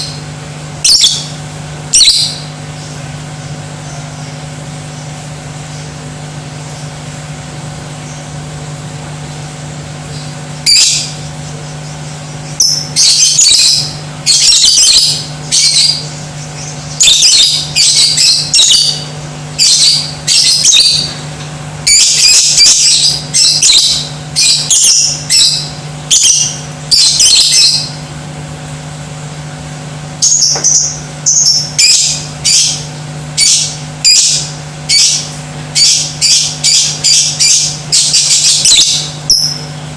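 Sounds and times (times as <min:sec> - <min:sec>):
steady low hum: 0:00.0 - 0:39.9
lovebird shrill chattering calls: 0:00.8 - 0:01.3, 0:01.9 - 0:02.4, 0:10.6 - 0:11.2, 0:12.6 - 0:21.1, 0:21.9 - 0:28.0, 0:30.2 - 0:39.7.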